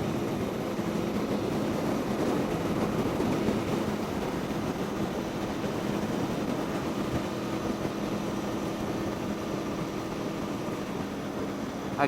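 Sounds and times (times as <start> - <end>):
motorcycle engine cruising: 0.0 - 12.0
wind and road noise: 0.0 - 12.0.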